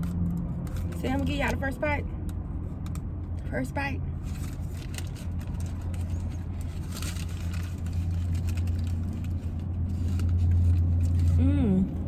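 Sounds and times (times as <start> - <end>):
parked car engine humming: 0.0 - 12.0
wrapper rustling: 4.2 - 11.4.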